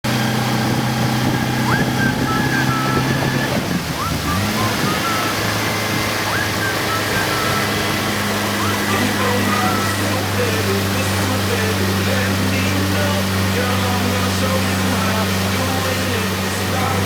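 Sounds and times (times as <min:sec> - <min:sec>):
outboard motor running: 0:00.0 - 0:17.0
water splashing: 0:00.1 - 0:17.0
short high chirping call: 0:01.7 - 0:10.0.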